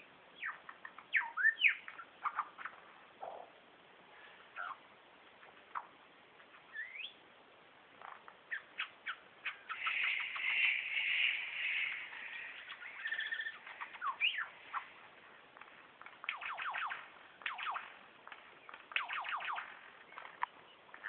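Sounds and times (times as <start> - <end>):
rapid falling sweeps of birdsong: 0.0 - 21.0
bird whistle: 1.2 - 2.4, 6.7 - 7.2, 8.5 - 14.8, 16.3 - 17.9, 18.9 - 19.7
lyrebird harsh chattering: 8.5 - 14.9, 16.2 - 17.9.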